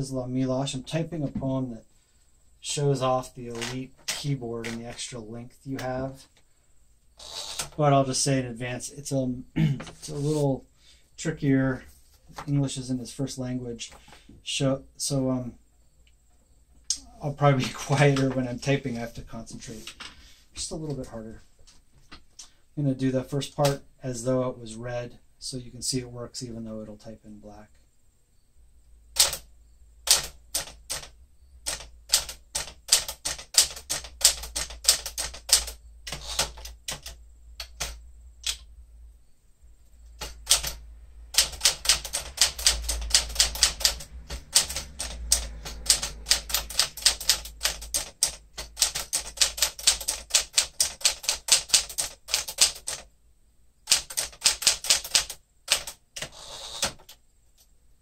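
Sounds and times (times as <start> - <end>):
typewriter keystrokes: 3.5 - 5.0, 29.2 - 29.5, 30.1 - 38.6, 40.2 - 53.0, 53.9 - 57.2.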